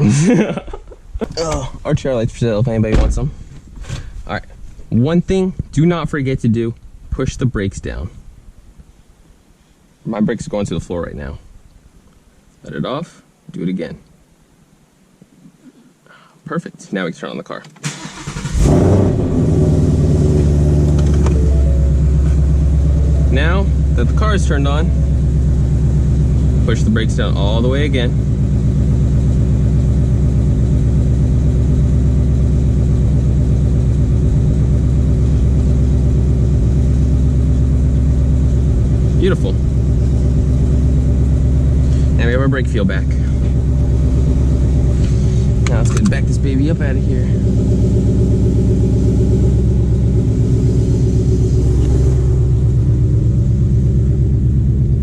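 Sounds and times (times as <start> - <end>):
car engine idling: 17.9 - 55.0.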